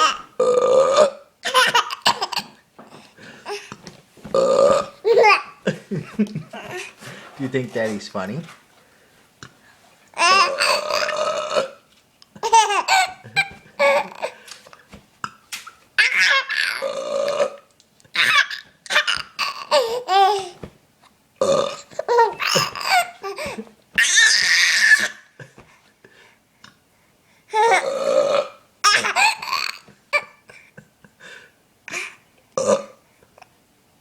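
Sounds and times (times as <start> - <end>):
man burping loudly: 0.4 - 1.3, 4.3 - 5.0, 10.4 - 11.8, 16.8 - 17.7, 21.4 - 21.9, 27.8 - 28.6, 32.6 - 33.0
baby laughing: 1.4 - 2.6, 4.7 - 6.9, 10.2 - 11.2, 12.4 - 14.4, 16.0 - 16.9, 18.1 - 20.6, 22.0 - 25.3, 28.8 - 30.5.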